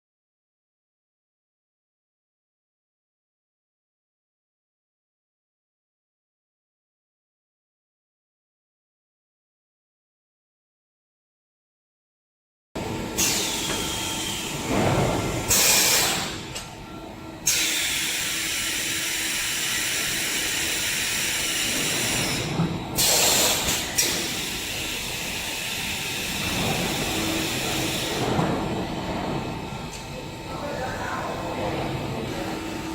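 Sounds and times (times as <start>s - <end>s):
machine hiss: 13.2s - 16.4s, 17.4s - 28.4s.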